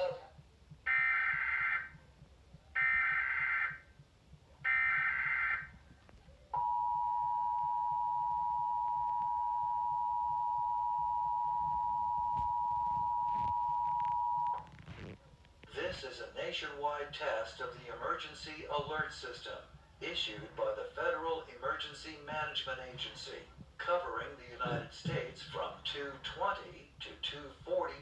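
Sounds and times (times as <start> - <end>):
two-tone attention signal: 6.6 - 14.6.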